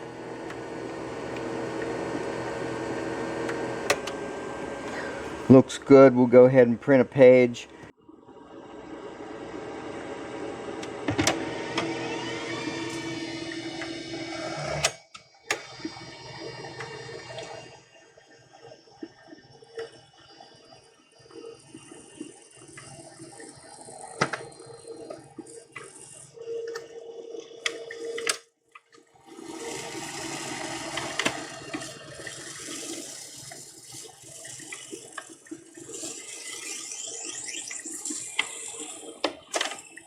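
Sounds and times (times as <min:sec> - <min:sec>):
laser printer whirring: 0:00.0 - 0:28.3, 0:29.1 - 0:40.0
printer paper feed clicks: 0:03.4 - 0:04.2, 0:29.3 - 0:32.0.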